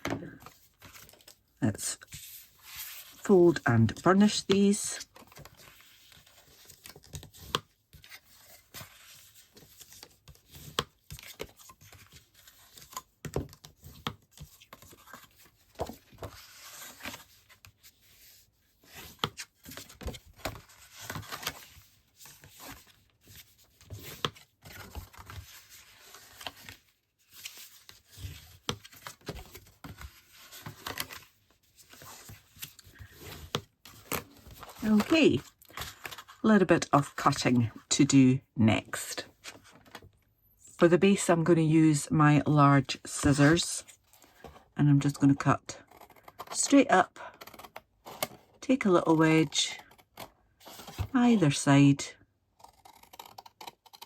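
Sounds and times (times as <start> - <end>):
cardstock creasing and rubbing: 45.2 - 48.5, 52.6 - 54.0.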